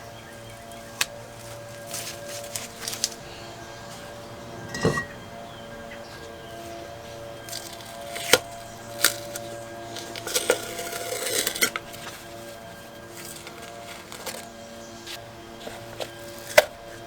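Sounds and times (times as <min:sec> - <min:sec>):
soft background music: 0:00.0 - 0:17.0
metal tools clinking: 0:04.0 - 0:05.3, 0:07.4 - 0:14.6.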